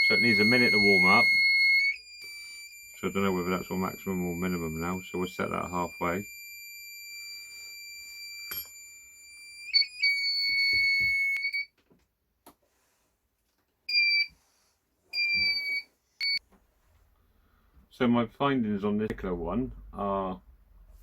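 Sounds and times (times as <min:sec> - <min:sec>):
short beeps: 0:00.0 - 0:08.8, 0:15.2 - 0:16.4
high-pitched alarm buzzer tone: 0:00.0 - 0:11.7.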